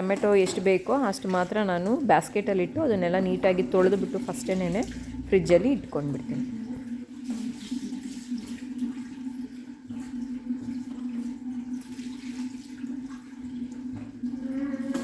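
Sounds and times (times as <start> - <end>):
water running from a tap: 0.0 - 15.0.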